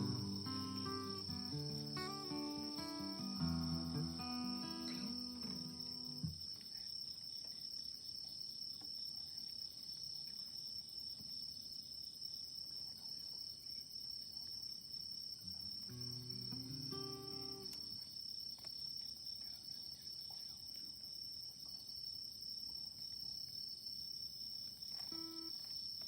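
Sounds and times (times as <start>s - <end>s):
acoustic guitar: 0.0s - 6.4s, 15.4s - 18.0s, 25.1s - 25.5s
crickets trilling: 0.0s - 26.0s.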